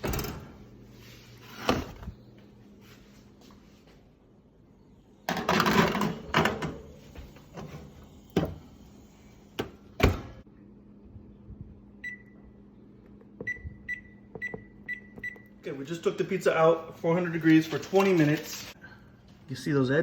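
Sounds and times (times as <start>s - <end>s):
oven timer beeping: 12.0s - 12.6s, 13.4s - 15.6s.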